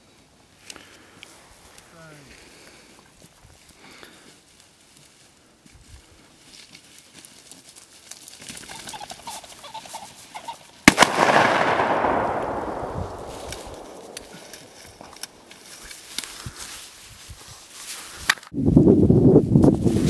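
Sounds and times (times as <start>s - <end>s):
shotgun shot with echo: 10.9s - 15.5s.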